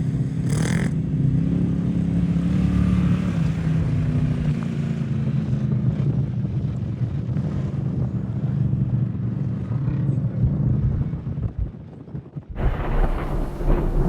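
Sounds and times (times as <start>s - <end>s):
vehicle engine running steadily: 0.0s - 11.7s
wind buffeting microphone: 10.4s - 14.0s.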